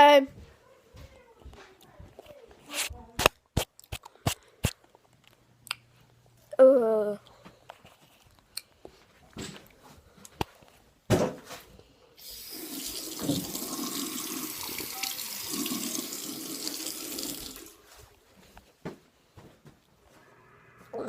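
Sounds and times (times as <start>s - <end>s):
water tap running: 12.2s - 17.8s.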